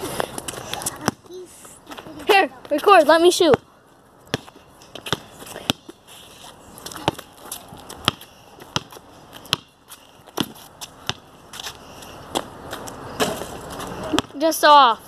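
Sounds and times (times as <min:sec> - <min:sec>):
ball bouncing: 0:00.9 - 0:01.3, 0:04.3 - 0:06.0, 0:06.9 - 0:11.3, 0:13.2 - 0:14.5.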